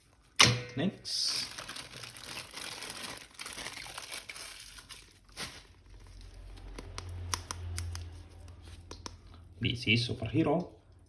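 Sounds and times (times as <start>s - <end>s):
plastic packaging crinkling: 1.0s - 7.3s.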